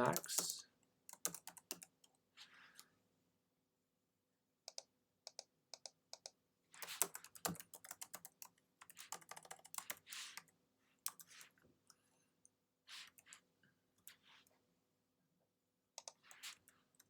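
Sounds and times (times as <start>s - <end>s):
typing on computer keyboard: 1.1s - 2.1s, 4.7s - 10.5s, 11.1s - 11.5s, 16.0s - 17.0s.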